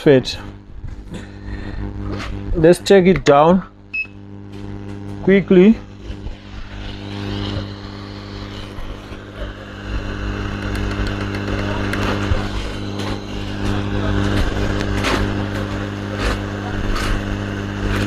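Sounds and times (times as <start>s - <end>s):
hot air station hum: 0.0s - 18.0s
rushing airflow: 5.9s - 15.5s.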